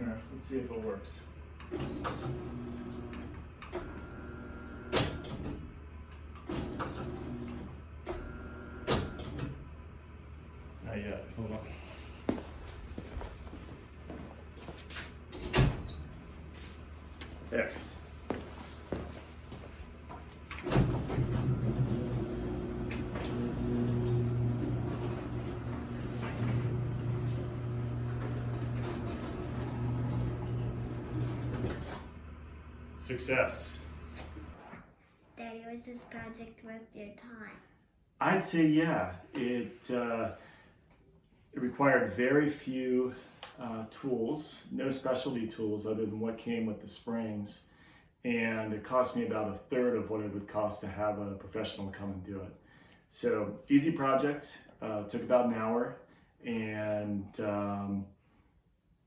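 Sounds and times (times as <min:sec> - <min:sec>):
garage door opener hum: 0:01.3 - 0:10.7, 0:20.3 - 0:34.6.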